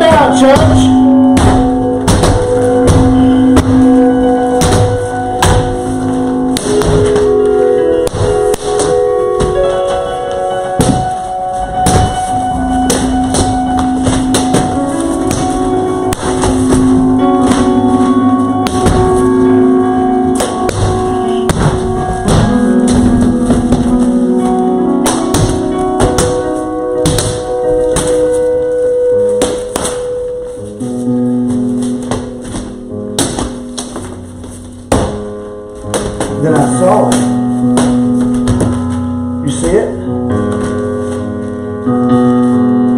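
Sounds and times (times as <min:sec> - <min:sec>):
slow background music: 0:00.0 - 0:42.9
hammer breaking sheetrock: 0:01.4 - 0:03.8.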